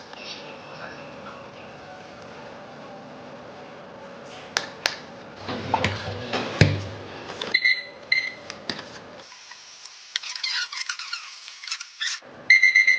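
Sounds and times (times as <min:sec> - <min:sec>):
short electronic beeps: 0:12.5 - 0:12.9.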